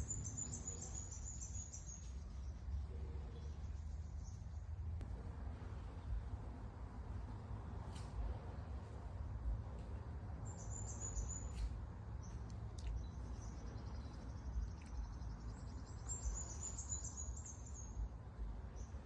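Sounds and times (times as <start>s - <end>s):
bird chirping in trills: 0.0s - 2.7s, 10.5s - 18.1s
low steady rumble: 0.0s - 19.0s.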